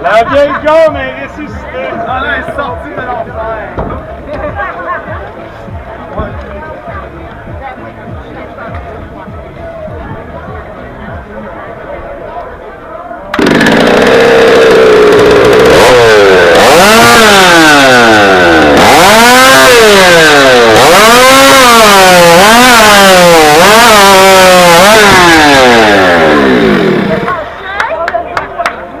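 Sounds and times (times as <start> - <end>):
chainsaw running full throttle: 13.3 - 27.5.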